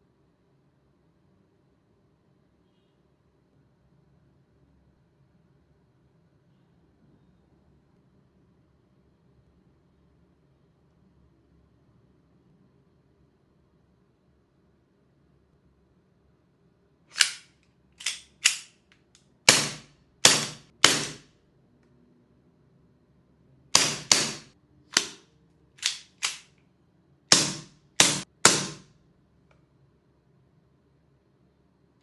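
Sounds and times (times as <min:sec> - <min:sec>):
airsoft pistol shots: 0:19.5 - 0:21.3, 0:23.7 - 0:25.2, 0:27.3 - 0:28.9.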